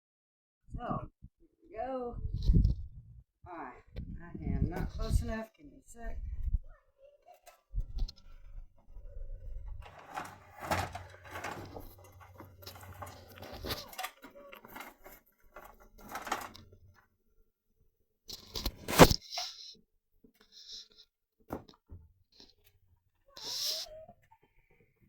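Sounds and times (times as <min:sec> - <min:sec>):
wooden jig rustles and taps: 0:09.8 - 0:16.8.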